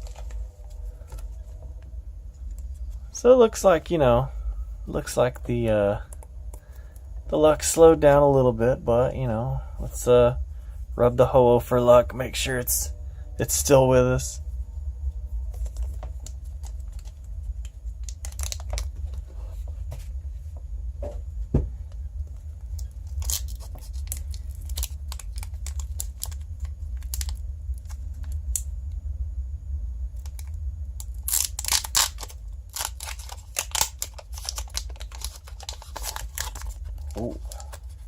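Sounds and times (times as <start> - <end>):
steady low hum: 0.0 - 38.0
foil wrapper crinkling and tearing: 15.5 - 19.3, 22.7 - 28.6, 30.2 - 38.0.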